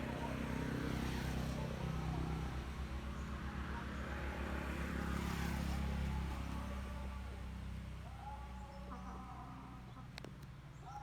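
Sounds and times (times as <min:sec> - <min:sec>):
road noise of passing vehicle: 0:00.0 - 0:10.8.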